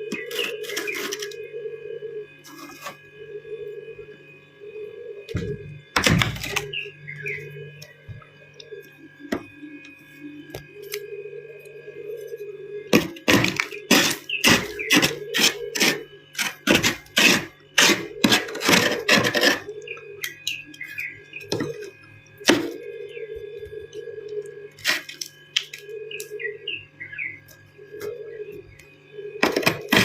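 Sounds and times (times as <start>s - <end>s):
ice being chewed: 13.0s - 21.1s, 23.6s - 26.3s.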